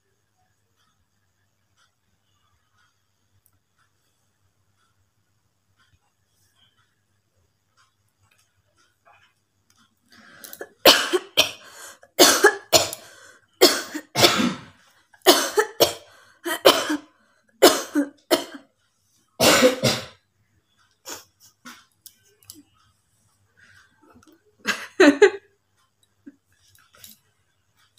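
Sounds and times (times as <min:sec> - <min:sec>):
person coughing: 0:10.6 - 0:18.7, 0:19.4 - 0:20.2.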